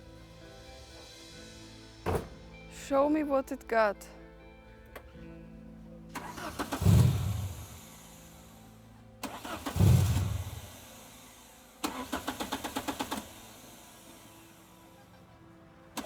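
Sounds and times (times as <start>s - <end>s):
car engine firing: 6.1s - 8.6s, 9.2s - 15.2s
starter cranking engine: 6.1s - 8.6s, 9.2s - 14.8s.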